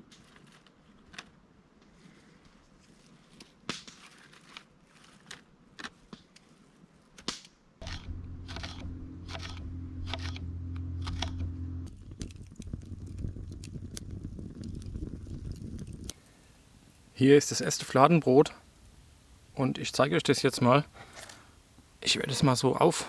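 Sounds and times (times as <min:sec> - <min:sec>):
steady low hum: 0:07.8 - 0:17.2.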